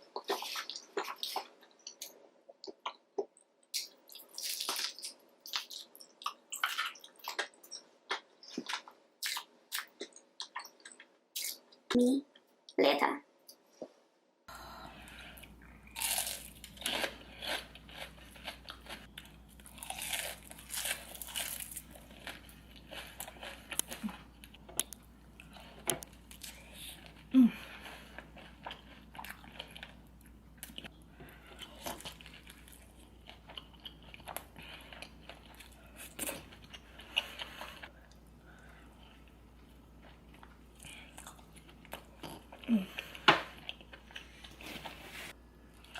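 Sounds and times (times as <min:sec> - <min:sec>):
person chewing crunchy food: 0:15.3 - 0:45.1.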